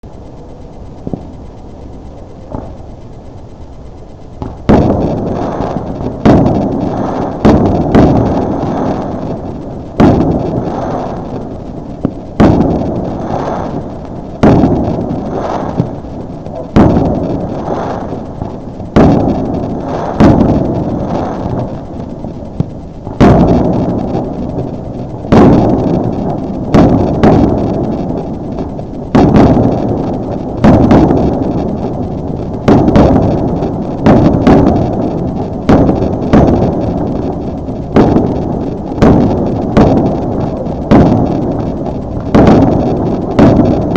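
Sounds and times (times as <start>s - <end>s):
fireworks bangs with rumbling echo: 0.0s - 43.9s.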